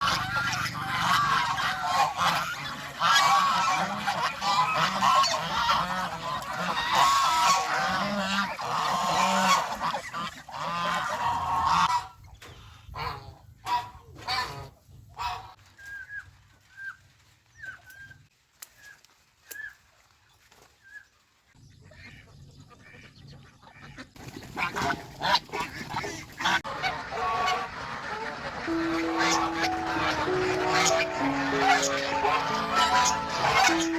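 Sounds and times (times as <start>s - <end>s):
geese honking: 0.0s - 12.1s, 24.6s - 33.9s.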